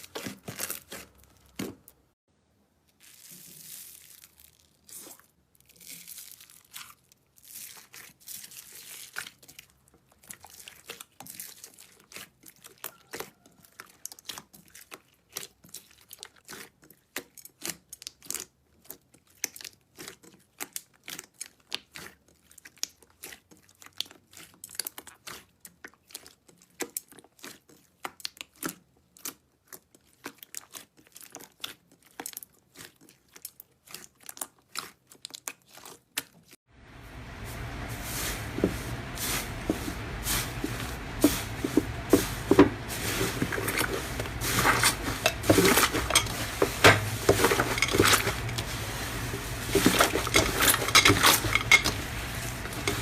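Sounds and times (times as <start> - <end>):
slime crackling and popping: 3.0 - 36.6.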